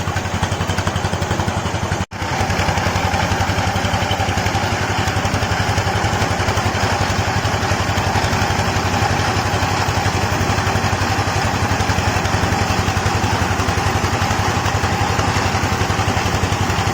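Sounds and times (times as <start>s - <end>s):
rice huller engine running: 0.0s - 16.9s.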